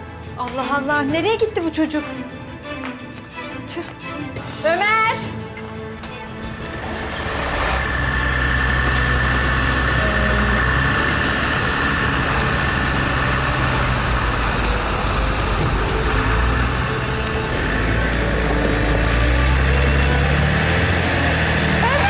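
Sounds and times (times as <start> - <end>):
truck engine running: 6.0 - 22.0.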